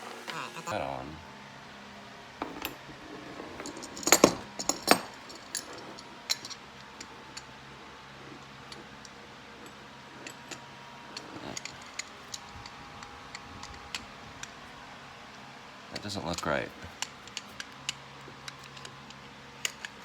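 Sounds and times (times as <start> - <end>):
small metal parts clinking: 2.4 - 7.5, 8.6 - 14.8, 16.0 - 20.0.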